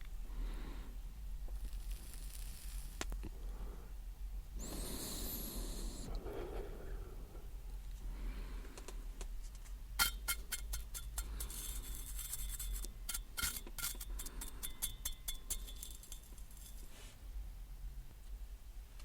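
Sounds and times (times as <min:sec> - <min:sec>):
hiss: 0:01.6 - 0:03.1, 0:04.6 - 0:06.1.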